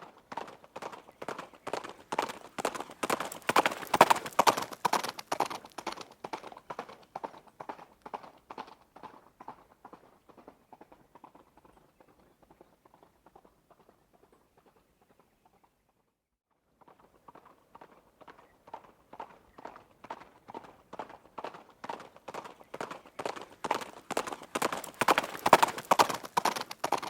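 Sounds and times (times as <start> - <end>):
hoofbeats of running horse: 0.0 - 15.8, 16.8 - 27.0.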